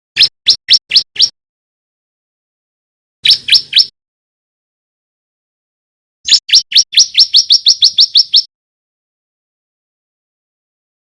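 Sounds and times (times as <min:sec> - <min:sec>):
bird chirping song: 0:00.2 - 0:01.4, 0:03.2 - 0:04.0, 0:06.3 - 0:08.5.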